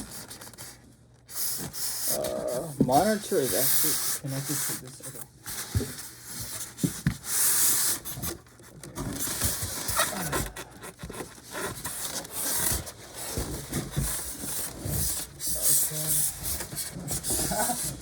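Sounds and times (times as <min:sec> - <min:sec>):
styrofoam and cardboard scraping: 0:05.5 - 0:18.0.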